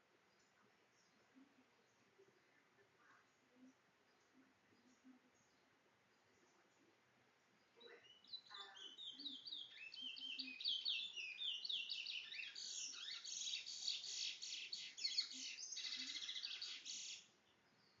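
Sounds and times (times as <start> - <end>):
finch singing whistles and trills: 7.8 - 18.0.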